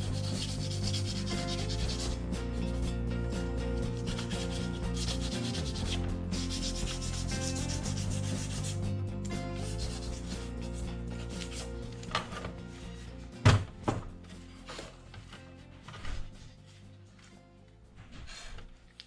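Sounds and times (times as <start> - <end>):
sandpaper rubbing on paint: 0.0 - 2.5, 3.8 - 12.0.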